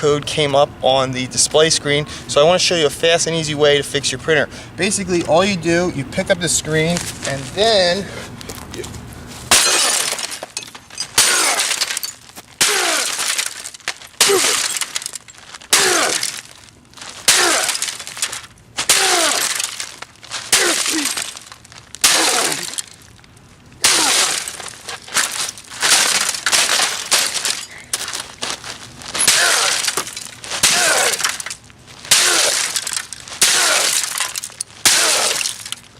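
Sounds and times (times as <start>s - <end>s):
printer being smashed: 9.5s - 23.1s, 23.8s - 35.9s.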